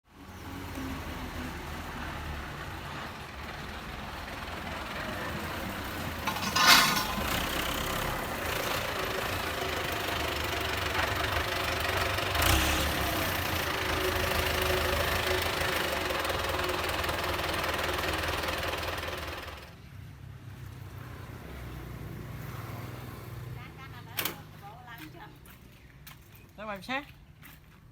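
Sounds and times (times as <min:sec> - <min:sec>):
tractor diesel engine running: 0:01.0 - 0:19.9.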